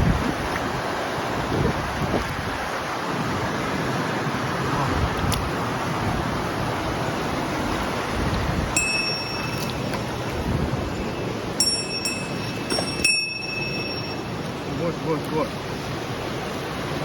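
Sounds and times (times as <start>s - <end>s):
stream water rushing: 0.0s - 17.0s
short high-pitched tones: 11.6s - 14.3s.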